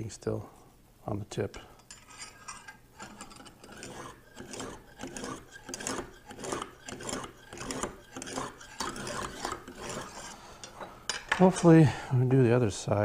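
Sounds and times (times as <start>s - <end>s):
honing stone scraping knife edge: 1.8s - 10.8s.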